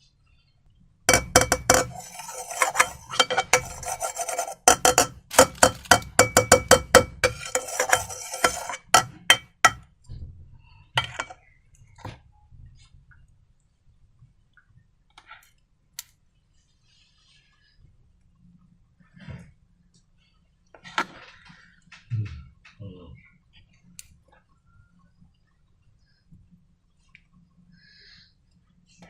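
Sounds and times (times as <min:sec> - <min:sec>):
sticky rubbing: 0:01.1 - 0:09.4.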